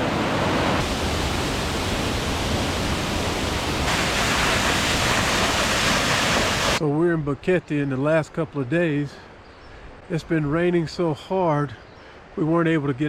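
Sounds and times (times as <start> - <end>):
rush of flowing water: 0.0 - 6.8.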